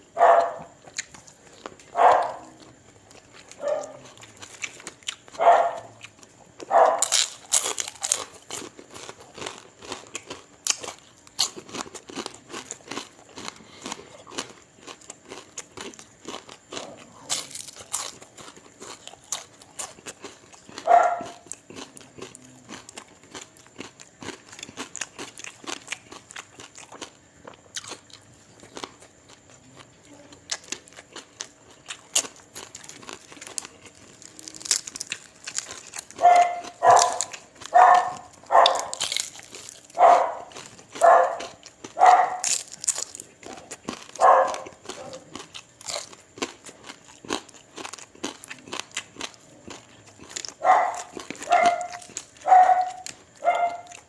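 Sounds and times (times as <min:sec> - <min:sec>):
crunching and chewing: 0:00.0 - 0:54.0
dog barking: 0:00.2 - 0:00.8, 0:01.9 - 0:02.6, 0:03.6 - 0:04.1, 0:05.3 - 0:06.0, 0:06.6 - 0:07.2, 0:20.7 - 0:21.4, 0:36.2 - 0:39.1, 0:40.0 - 0:42.5, 0:44.2 - 0:45.4, 0:50.6 - 0:54.0.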